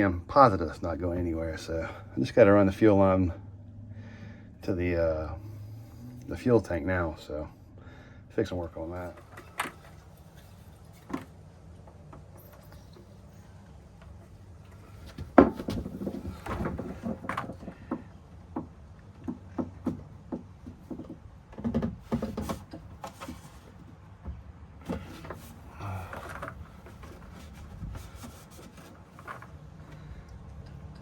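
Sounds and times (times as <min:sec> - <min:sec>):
knocks taps and scuffs: 0:14.0 - 0:25.6.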